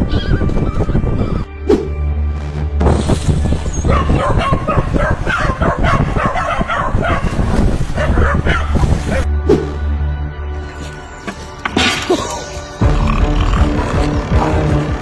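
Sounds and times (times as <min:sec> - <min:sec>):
animal yelping: 0:10.7 - 0:15.0.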